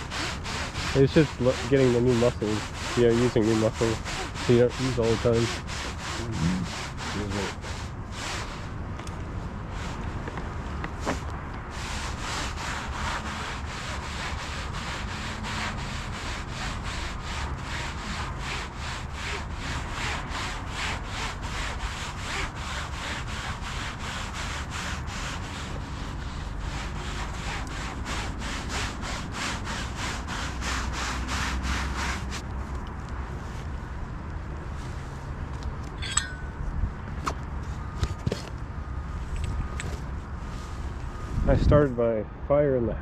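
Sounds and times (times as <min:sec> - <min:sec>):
rhythmic scraping strokes: 0:00.0 - 0:08.6, 0:36.0 - 0:36.7.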